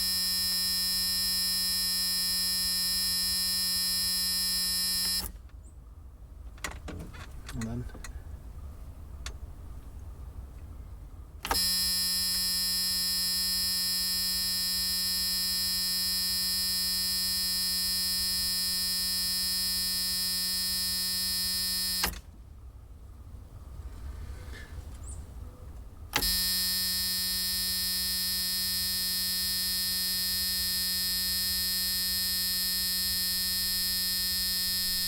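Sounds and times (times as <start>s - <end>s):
electric buzzer buzzing: 0.0s - 5.4s, 11.4s - 22.2s, 26.1s - 35.0s
low background rumble: 5.4s - 11.5s.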